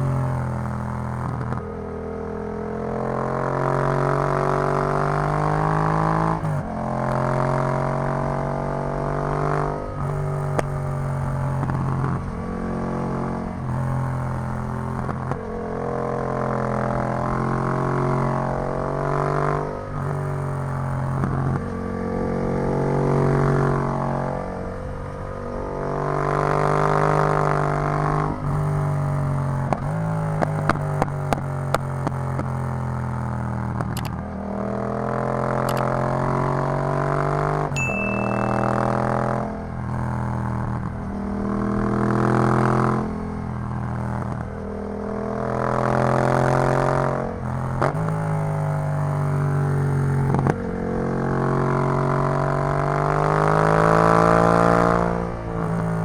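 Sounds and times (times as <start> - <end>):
motorcycle engine revving: 0.0 - 24.7, 25.7 - 56.0.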